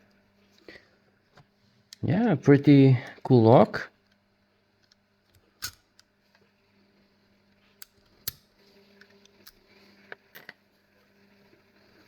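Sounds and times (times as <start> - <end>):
padlock metallic clicks: 5.6 - 6.1, 7.8 - 8.4.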